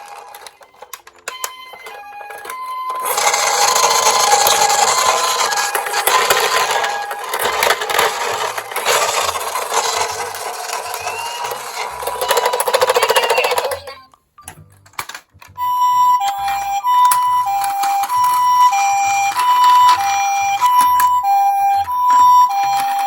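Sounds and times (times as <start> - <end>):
toy two-tone siren: 0.0 - 13.9, 15.6 - 23.0
rasping noise of toy running: 3.0 - 13.9.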